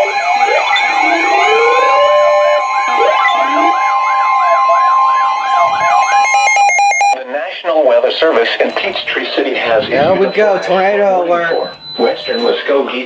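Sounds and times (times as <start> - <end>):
fast sweeping siren: 0.0 - 7.2, 9.6 - 13.0
slow rising wails: 0.0 - 7.2
steady two-note alert tone: 0.0 - 7.2.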